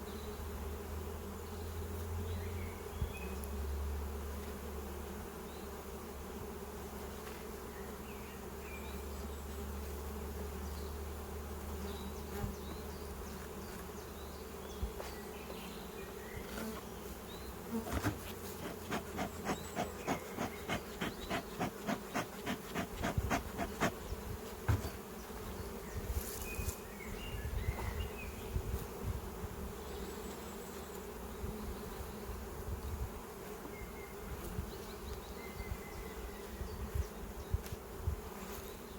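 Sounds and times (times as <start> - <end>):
honeybees buzzing: 4.0 - 27.2.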